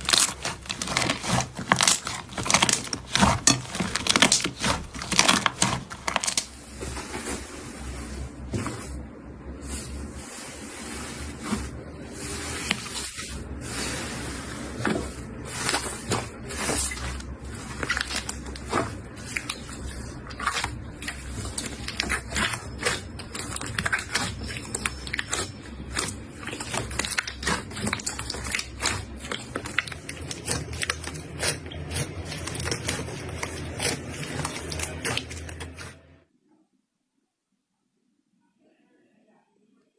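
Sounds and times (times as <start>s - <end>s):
slime squished by hand: 17.6s - 35.9s.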